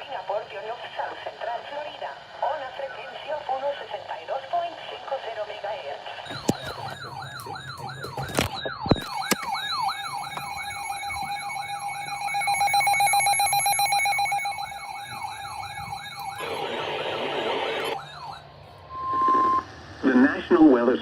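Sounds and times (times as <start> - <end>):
electronic siren yelping: 6.2 - 19.8
steady second tone: 9.0 - 20.4.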